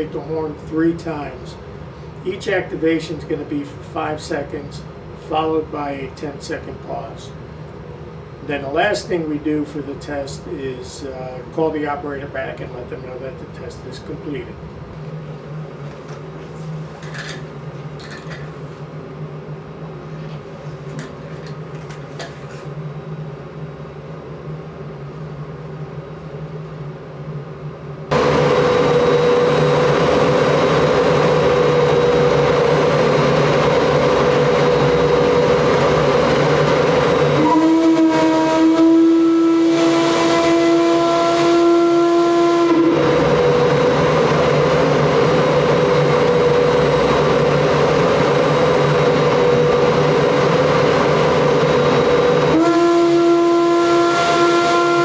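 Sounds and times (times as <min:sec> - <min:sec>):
loud steady noise: 0:27.2 - 0:55.0
steam whistle blast: 0:37.2 - 0:44.0, 0:52.1 - 0:55.0.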